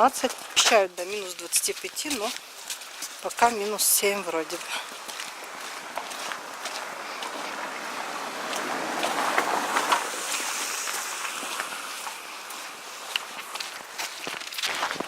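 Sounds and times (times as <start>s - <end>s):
faint footsteps: 0.0s - 15.0s
car passing tyre noise: 4.6s - 15.0s.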